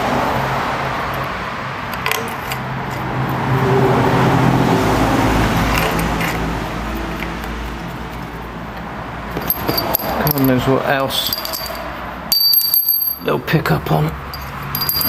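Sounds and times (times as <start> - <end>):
road traffic rumble: 0.0 - 15.0
metal engine parts clinking: 1.1 - 3.6, 5.4 - 13.6, 14.2 - 15.0.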